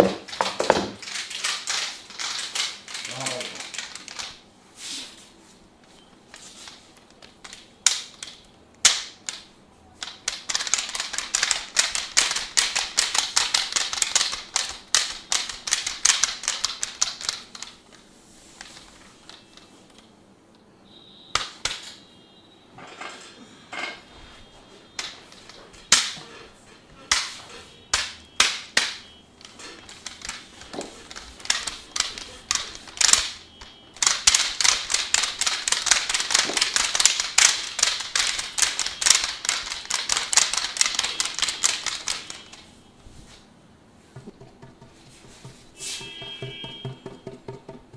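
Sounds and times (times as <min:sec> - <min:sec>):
percussive massage taps and slaps: 0:27.1 - 0:29.1, 0:44.2 - 0:47.9.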